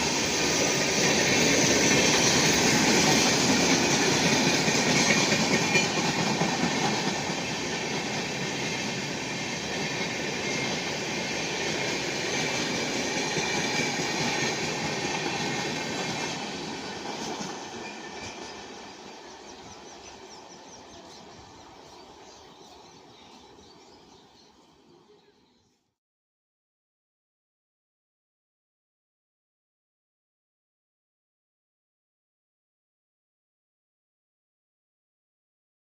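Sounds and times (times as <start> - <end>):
train wheels rolling over rails: 0.0 - 24.4.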